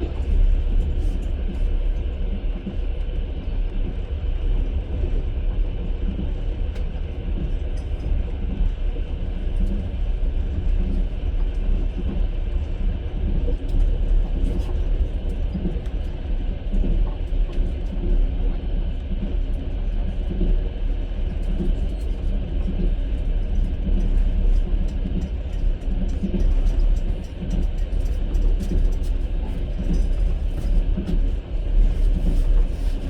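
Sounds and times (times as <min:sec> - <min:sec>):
train rumble: 0:00.0 - 0:33.0.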